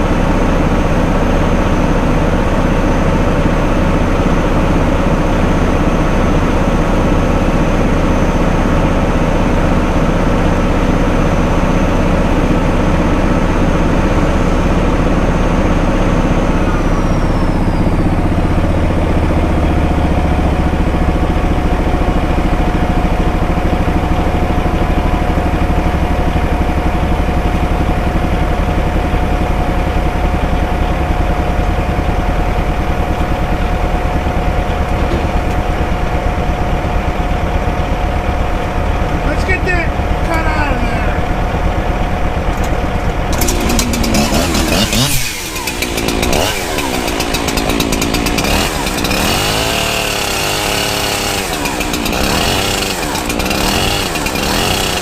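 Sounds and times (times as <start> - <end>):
wood chipper running: 0.0 - 55.0
low steady hum: 23.0 - 45.0
high whine dropping in pitch: 31.3 - 47.2.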